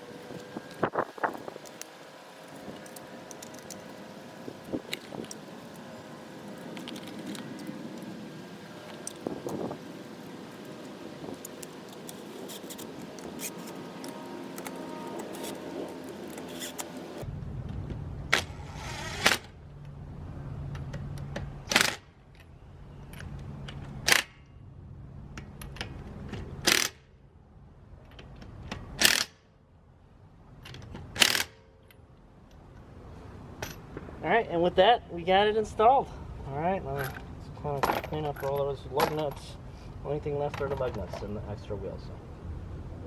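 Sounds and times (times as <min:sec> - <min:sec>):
steady background noise: 0:00.0 - 0:43.0
rising whir: 0:12.2 - 0:22.1
impact wrench bursts on lug nuts: 0:26.6 - 0:27.1, 0:29.0 - 0:29.4, 0:31.2 - 0:31.6.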